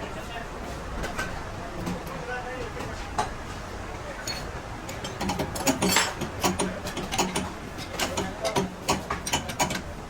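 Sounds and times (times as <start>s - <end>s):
hand tools clinking on metal parts: 4.2s - 9.9s.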